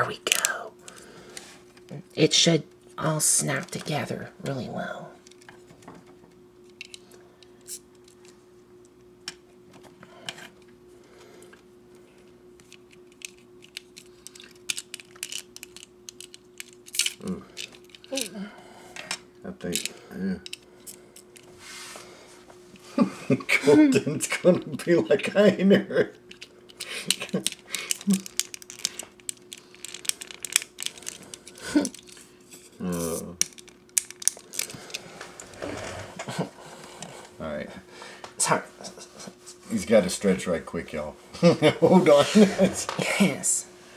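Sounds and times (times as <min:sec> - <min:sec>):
faint steady hum: 0:00.0 - 0:43.9
plastic parts clicking: 0:06.7 - 0:08.3, 0:12.6 - 0:18.3, 0:19.0 - 0:20.6, 0:26.3 - 0:32.3, 0:32.9 - 0:35.6.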